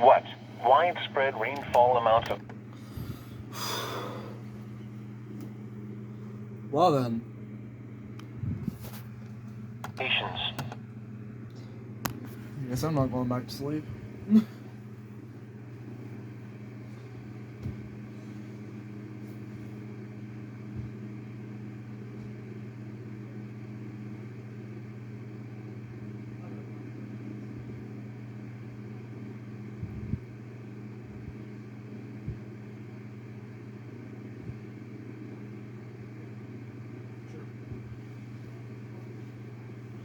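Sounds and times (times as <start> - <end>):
steady low hum: 0.0 - 40.0.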